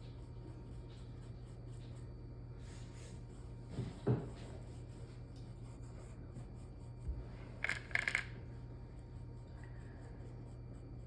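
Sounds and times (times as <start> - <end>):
steady low hum: 0.0 - 11.0
soft knock: 3.8 - 4.4.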